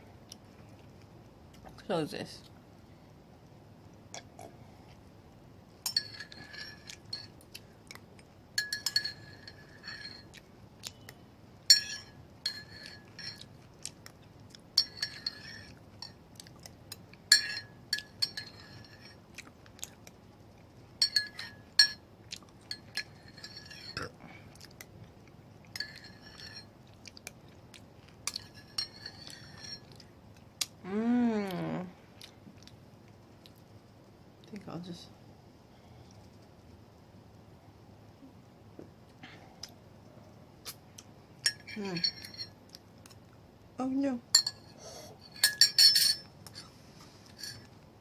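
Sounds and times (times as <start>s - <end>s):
utensil scraping a ceramic dish: 5.9s - 7.3s, 8.6s - 10.3s, 14.8s - 15.8s, 17.3s - 19.2s, 22.7s - 24.0s, 25.8s - 26.7s, 28.3s - 29.8s.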